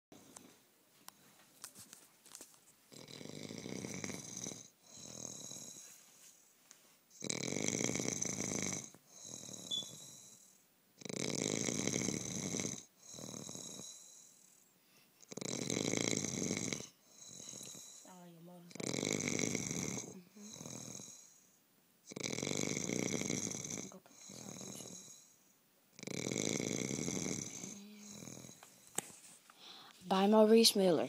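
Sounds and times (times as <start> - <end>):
man snoring loudly: 2.9 - 5.8, 7.2 - 14.4, 15.3 - 18.1, 18.7 - 21.4, 22.1 - 25.3, 26.0 - 28.6.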